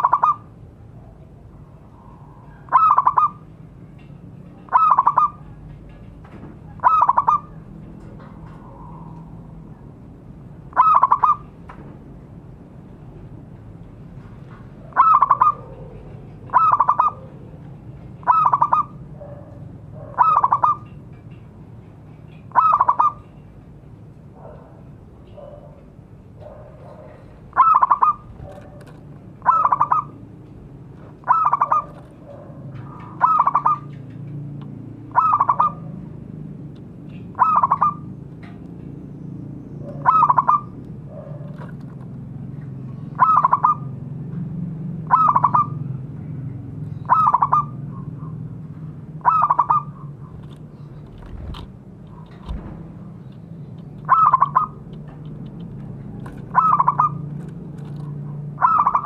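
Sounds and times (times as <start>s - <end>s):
dove cooing: 6.8s - 7.7s, 8.4s - 9.8s, 10.7s - 11.5s, 14.8s - 17.6s, 18.2s - 21.0s, 26.4s - 30.2s, 31.2s - 34.0s, 37.4s - 38.0s, 39.8s - 41.9s, 43.1s - 43.9s, 45.1s - 45.9s, 54.0s - 54.9s, 56.0s - 57.4s, 58.6s - 59.0s.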